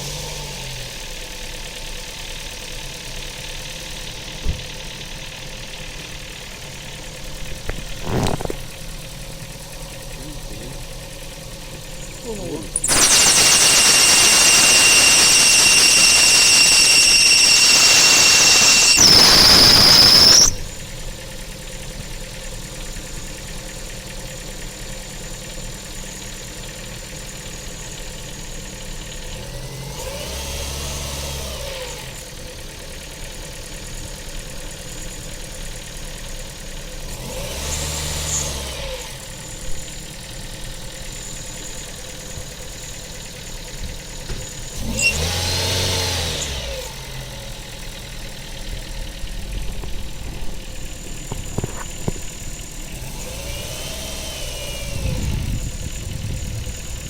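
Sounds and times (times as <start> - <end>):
engine revving: 0.0 - 23.8, 28.6 - 32.4, 37.0 - 57.0
car engine idling: 0.0 - 57.0
belt squeal: 12.0 - 21.0, 44.4 - 45.6.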